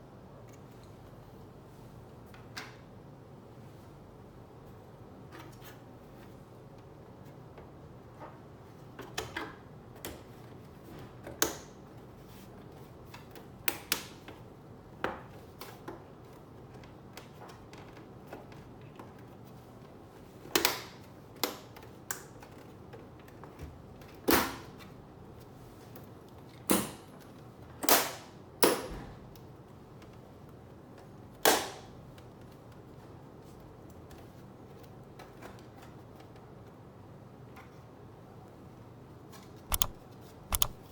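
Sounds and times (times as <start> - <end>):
computer parts and tools clicking: 39.7 - 40.9.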